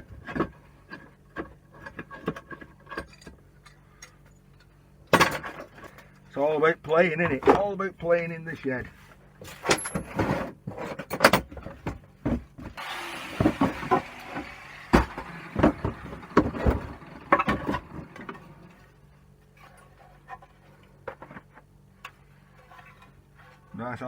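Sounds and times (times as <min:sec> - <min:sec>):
metal parts clanking and knocking: 0:00.2 - 0:06.2, 0:09.5 - 0:12.0, 0:13.3 - 0:18.9.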